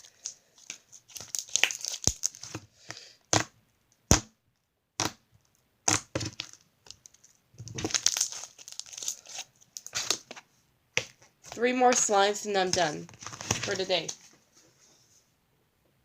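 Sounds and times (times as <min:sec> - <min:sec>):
slime squishing and crackling: 0:00.0 - 0:02.7, 0:05.0 - 0:05.2, 0:05.8 - 0:10.4.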